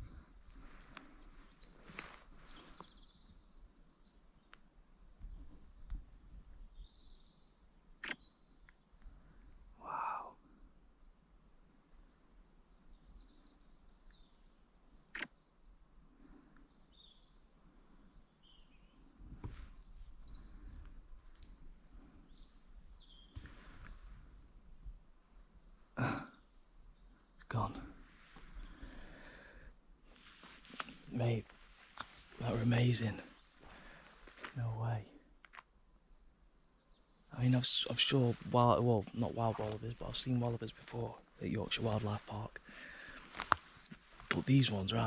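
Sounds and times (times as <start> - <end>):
low wind rumble: 0.0 - 4.0
faint birds chirping: 0.0 - 45.0
sharp clicks: 8.0 - 8.8, 15.1 - 15.4.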